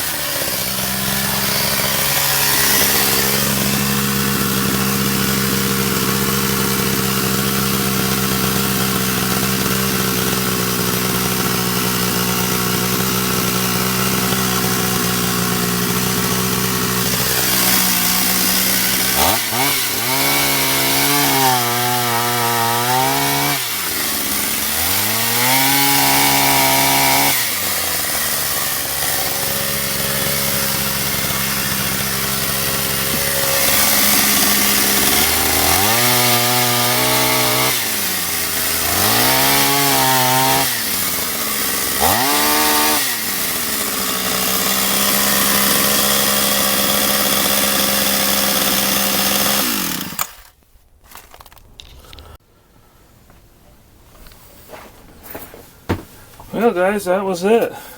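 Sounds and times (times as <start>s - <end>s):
chainsaw idling and revving: 0.0s - 50.6s, 56.6s - 57.9s
chainsaw cutting wood: 0.0s - 52.4s.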